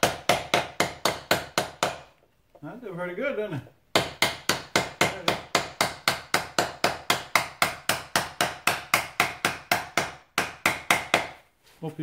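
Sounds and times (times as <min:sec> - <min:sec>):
rapid hammer taps: 0:00.0 - 0:02.1, 0:03.9 - 0:11.4.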